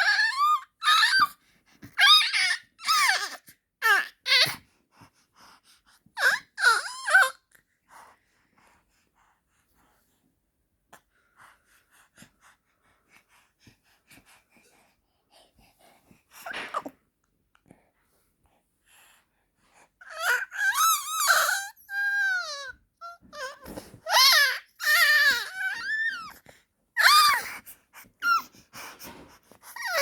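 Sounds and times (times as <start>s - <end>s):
baby squealing: 2.0s - 3.4s, 6.2s - 7.4s, 20.1s - 26.3s, 27.0s - 27.5s
baby breathing and mouth sounds: 10.9s - 21.8s, 23.0s - 24.2s, 25.3s - 30.0s.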